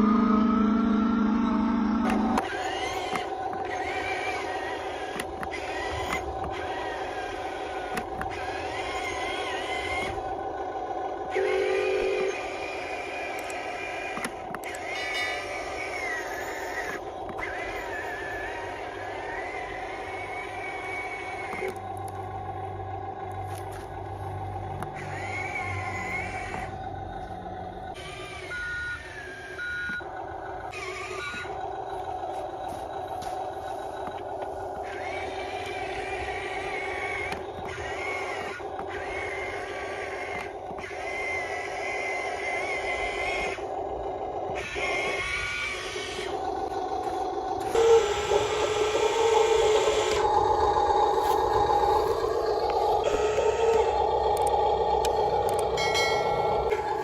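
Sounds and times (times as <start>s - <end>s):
electronic reversing beeps: 0.0s - 2.4s, 27.9s - 30.1s, 47.6s - 57.0s
small electric motors whirring: 0.0s - 22.6s, 23.3s - 32.5s, 33.1s - 57.0s
loud steady hum: 0.0s - 57.0s.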